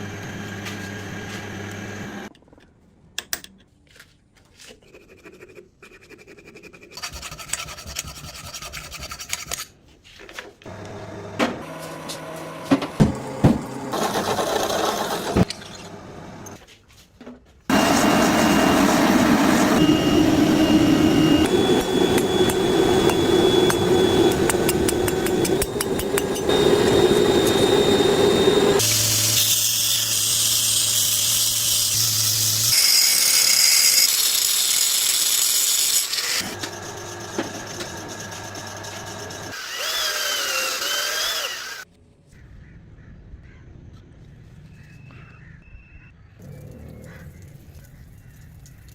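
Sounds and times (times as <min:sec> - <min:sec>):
metal tools grinding steel: 0:28.6 - 0:41.8.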